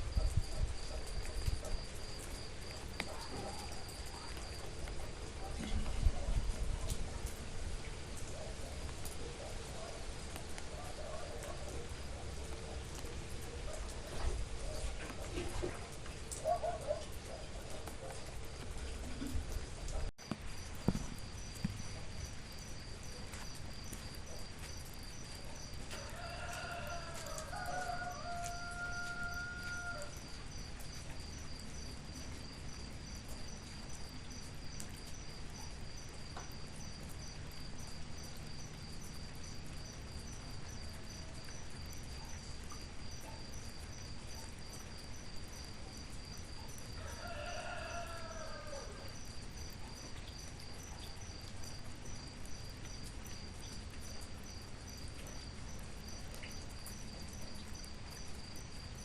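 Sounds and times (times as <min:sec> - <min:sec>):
cricket trilling: 0:00.0 - 0:07.4, 0:16.3 - 0:59.0
steady rain hiss: 0:00.0 - 0:59.0
rooster crowing: 0:25.9 - 0:30.2, 0:47.0 - 0:49.1.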